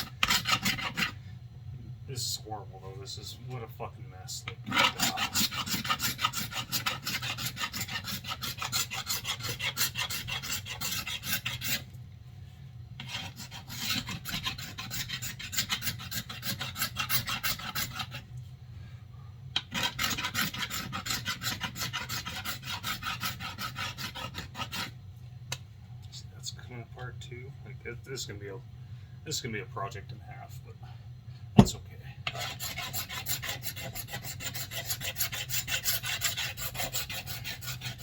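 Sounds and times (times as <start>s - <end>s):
knife scraping wooden handle: 0.0s - 1.2s, 4.6s - 11.9s, 13.0s - 18.2s, 19.6s - 24.9s, 32.3s - 38.0s
steady low hum: 0.0s - 38.0s.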